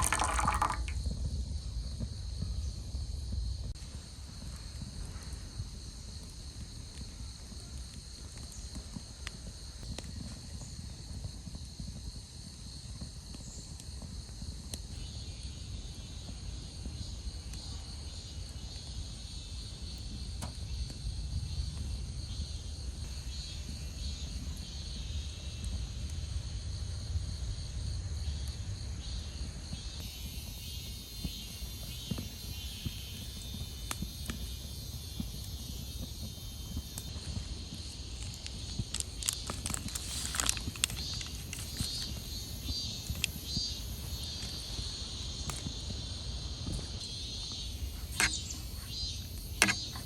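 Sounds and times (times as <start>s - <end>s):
insects chirring: 0.0s - 50.0s.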